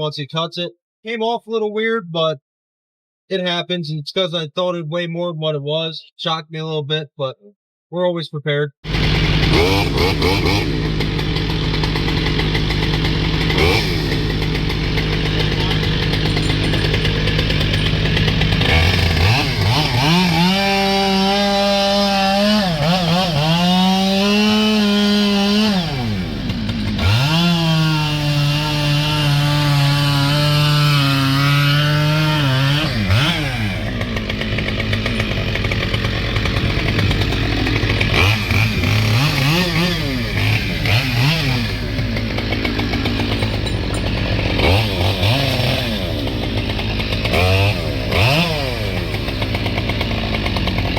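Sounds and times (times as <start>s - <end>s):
chainsaw cutting log: 8.8s - 50.9s
low engine hum: 32.6s - 46.9s.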